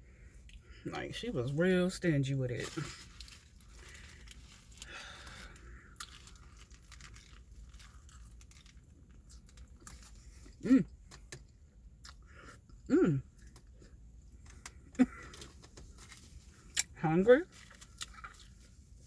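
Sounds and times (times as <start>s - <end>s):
chewing with wet mouth clicks: 17.7s - 18.5s.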